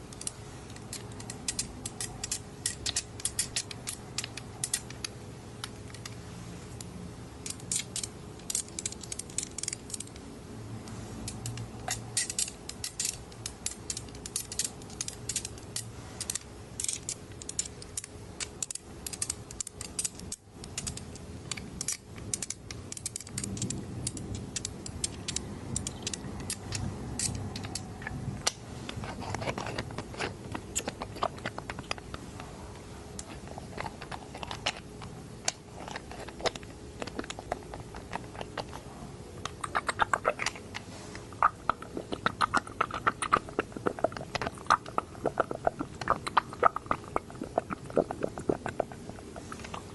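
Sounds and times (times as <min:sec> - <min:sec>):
soft handling noise: 0:00.0 - 0:39.6
eyedropper clicks and squeaks: 0:11.5 - 0:28.5, 0:39.4 - 0:49.9.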